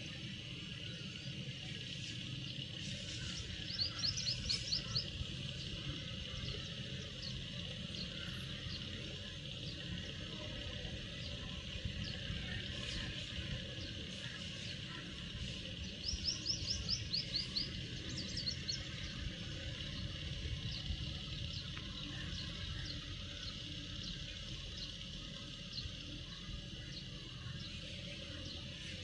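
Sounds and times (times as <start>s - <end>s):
birds chirping: 0.0s - 29.0s
high insect-like drone: 0.0s - 29.0s.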